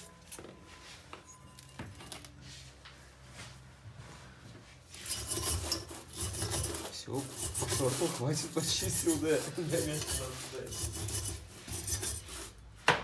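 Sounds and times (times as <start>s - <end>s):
tool scraping metal harshly: 5.0s - 12.6s.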